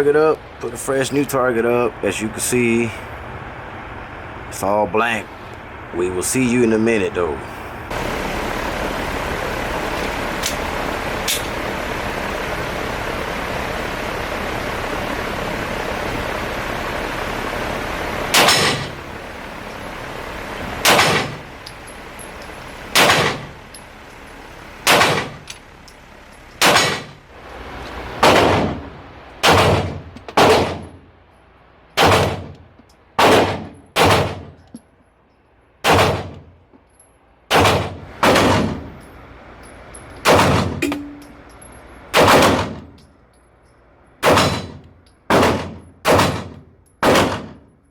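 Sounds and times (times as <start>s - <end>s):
fan rushing noise: 0.0s - 47.6s
pistol shots echoing: 20.8s - 21.4s, 23.0s - 23.5s, 24.9s - 25.4s, 26.6s - 27.1s, 28.2s - 31.0s, 32.0s - 32.5s, 33.2s - 34.6s, 35.8s - 36.4s, 37.5s - 38.8s, 42.2s - 42.8s, 44.2s - 47.6s.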